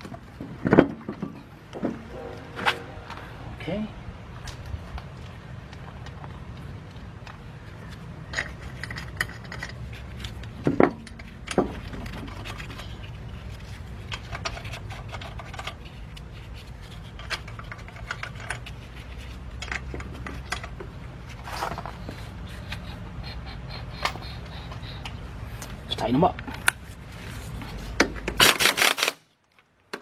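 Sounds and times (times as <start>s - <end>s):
steady low hum: 1.3s - 8.3s
metal clicks and rattles of lug nuts: 5.7s - 21.0s.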